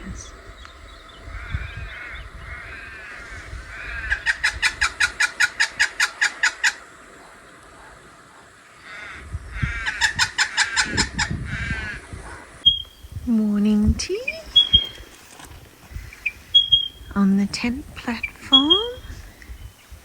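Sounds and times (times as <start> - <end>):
bird chirping and clucking: 0.6 - 8.0, 9.6 - 13.2, 14.0 - 15.2, 15.8 - 17.2.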